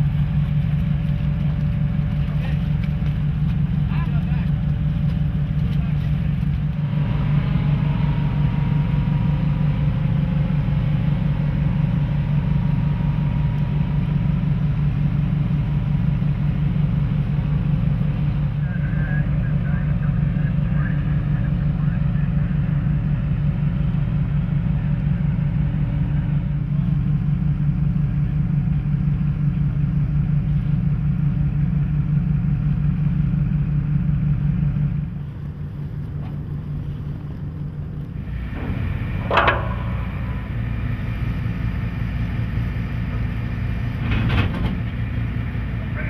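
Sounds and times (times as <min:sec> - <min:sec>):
quieter engine drone: 0:00.0 - 0:46.0
tugboat engine drone: 0:00.0 - 0:46.0
sharp clank: 0:38.4 - 0:41.6.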